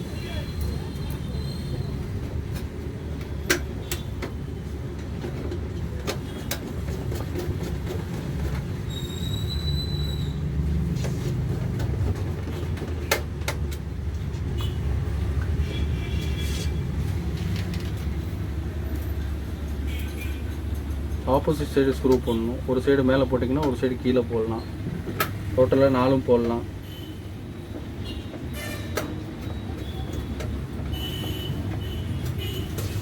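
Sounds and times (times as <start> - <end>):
high squeak: 8.9 - 10.4.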